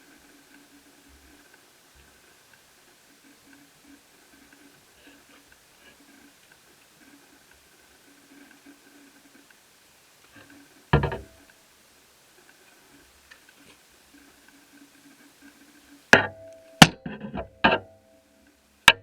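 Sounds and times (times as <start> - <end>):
solid knock on work surface: 11.0 - 11.3.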